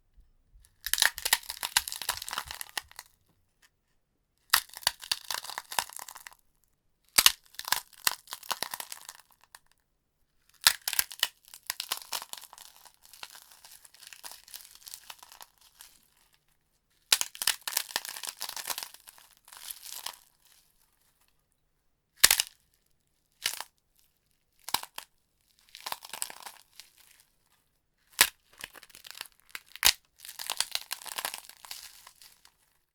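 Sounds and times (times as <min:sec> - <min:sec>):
crackers being crushed: 0:00.8 - 0:03.1, 0:04.5 - 0:06.4, 0:07.2 - 0:09.3, 0:28.2 - 0:32.4.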